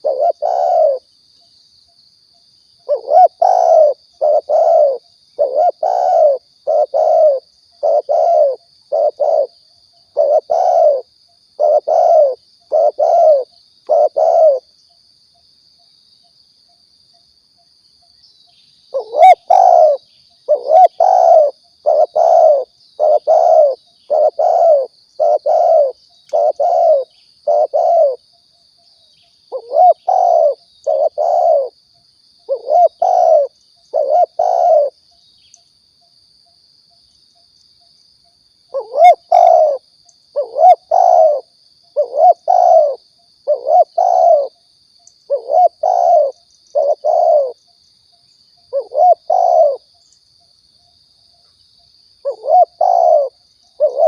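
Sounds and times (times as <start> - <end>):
dove cooing: 0.0 - 1.1, 2.8 - 14.7, 18.9 - 28.2, 29.5 - 31.8, 32.5 - 35.0, 38.7 - 44.6, 45.3 - 47.6, 48.7 - 49.9, 52.2 - 54.0.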